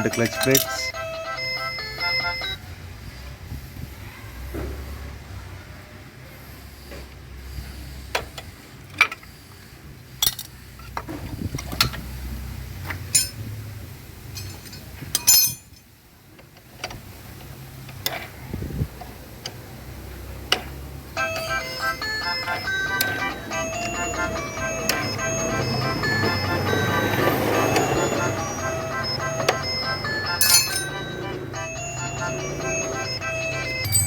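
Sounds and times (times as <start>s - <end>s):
metallic clinks of tools and plates: 0.0s - 0.9s, 13.1s - 13.4s, 14.3s - 15.9s, 30.4s - 31.2s.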